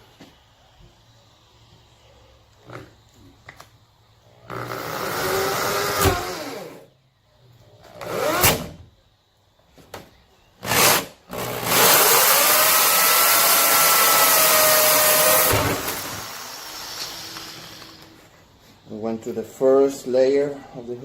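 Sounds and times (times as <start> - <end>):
electric drill with hole saw cutting: 4.5 - 6.8, 10.6 - 18.2.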